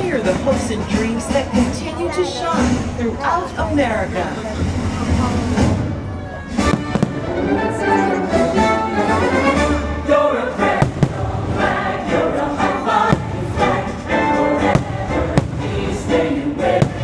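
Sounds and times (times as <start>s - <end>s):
orchestral music: 4.4s - 17.0s
firework bangs: 4.9s - 7.4s, 10.7s - 17.0s
choir singing: 6.6s - 17.0s.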